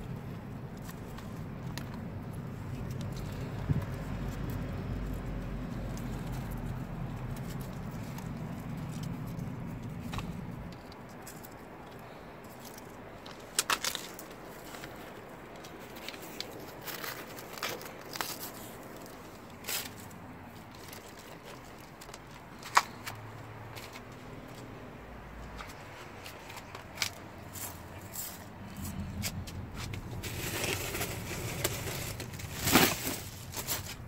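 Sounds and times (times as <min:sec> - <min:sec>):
soft rustling: 0:00.0 - 0:34.0
steady low rumble: 0:23.3 - 0:34.0.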